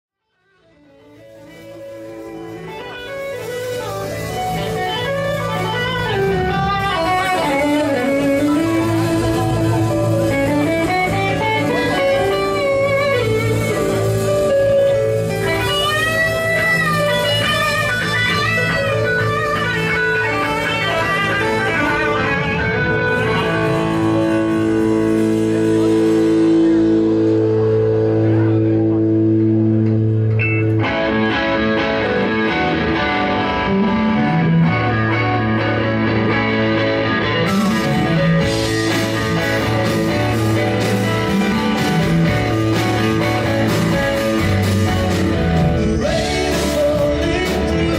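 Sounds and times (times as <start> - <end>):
electric guitar lead: 0.2 - 47.9
live blues-rock band playing: 0.4 - 47.9.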